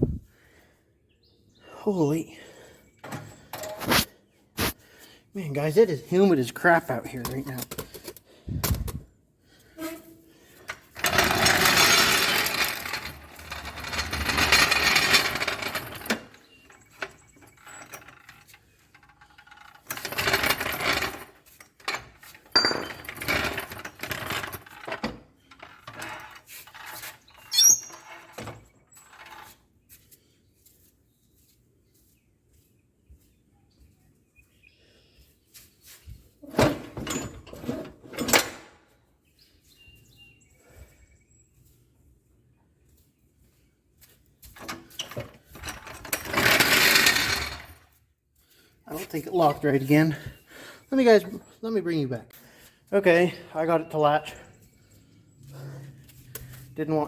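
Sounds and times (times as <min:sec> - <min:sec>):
metal scraping and clanking: 0:03.0 - 0:04.8, 0:10.6 - 0:29.5, 0:36.4 - 0:38.6, 0:44.6 - 0:47.8.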